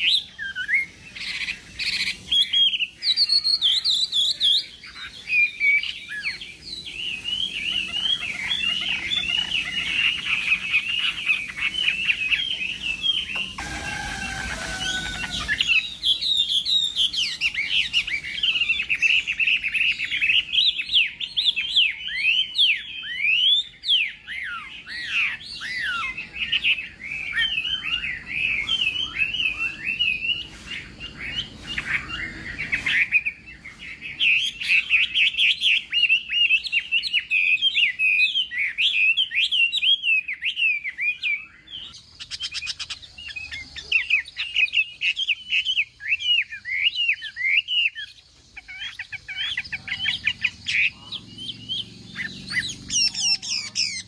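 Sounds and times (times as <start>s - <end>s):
bird singing whistled phrases: 0.0s - 54.0s.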